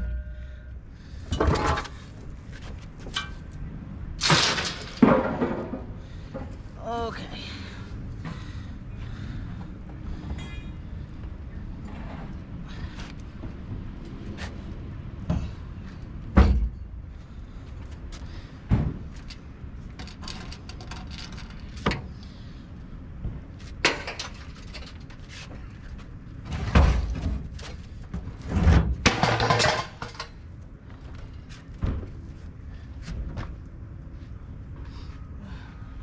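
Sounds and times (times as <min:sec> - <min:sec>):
low rumble: 0:00.0 - 0:02.6
thumps and clanks: 0:26.5 - 0:30.4.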